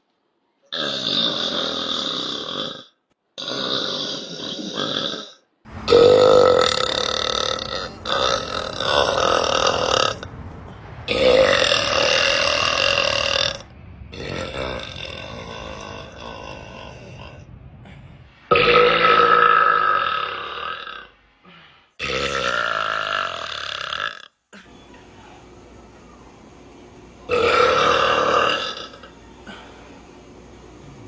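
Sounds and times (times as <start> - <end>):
woman burping: 27.3 - 29.6.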